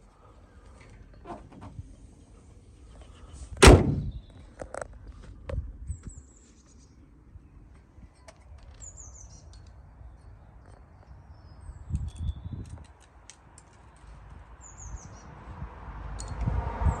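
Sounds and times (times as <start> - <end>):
low rumbling thumps: 3.6 - 4.2
small birds chirping: 5.9 - 12.9, 13.8 - 15.4.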